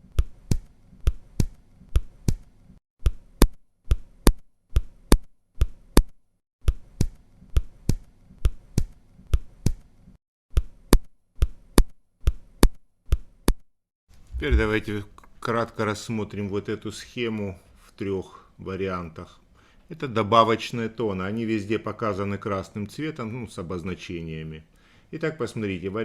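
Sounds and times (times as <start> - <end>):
synthetic heartbeat lub-dub: 14.3 - 14.9.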